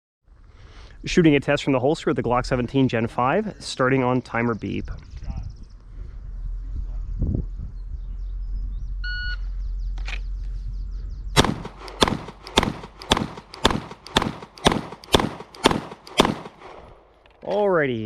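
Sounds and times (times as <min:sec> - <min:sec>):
pistol shots: 0:11.4 - 0:17.1.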